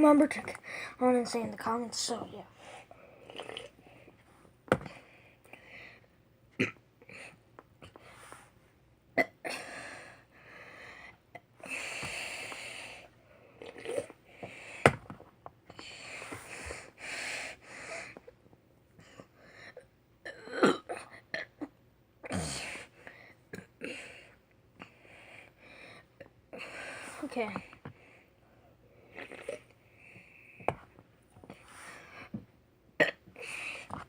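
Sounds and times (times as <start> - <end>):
boy burping: 20.2 - 22.8, 33.0 - 33.5
boy gasping and wheezing: 33.3 - 34.0.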